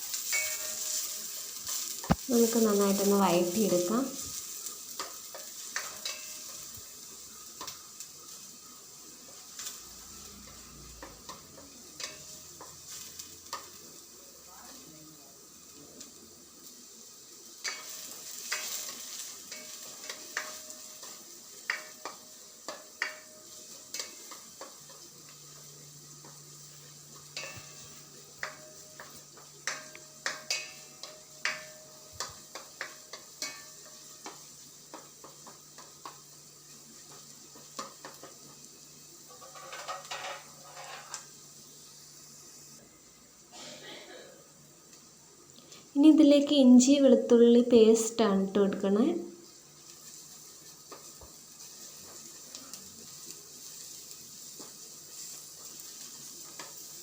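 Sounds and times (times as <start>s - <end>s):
onions sizzling in hot oil: 0.0s - 57.0s
spoon scraping a pan: 0.1s - 7.9s, 10.4s - 13.7s, 17.5s - 36.2s, 39.2s - 41.4s.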